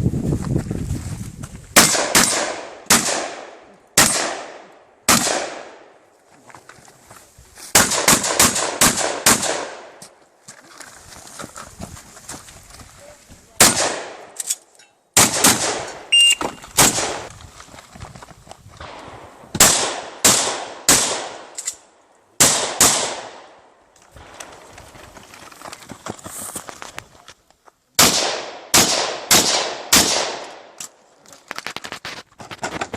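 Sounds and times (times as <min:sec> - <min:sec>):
loud shotgun shots: 0:01.8 - 0:05.8, 0:07.7 - 0:09.9, 0:13.6 - 0:14.3, 0:15.2 - 0:16.1, 0:16.8 - 0:17.3, 0:18.8 - 0:21.6, 0:22.4 - 0:23.5, 0:28.0 - 0:30.7
gun handling clatter: 0:14.4 - 0:15.0.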